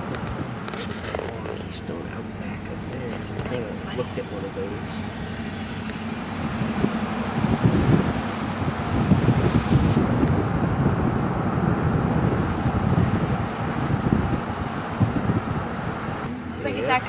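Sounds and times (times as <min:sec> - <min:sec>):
car road noise: 0:00.0 - 0:17.0
wind buffeting microphone: 0:00.0 - 0:17.0.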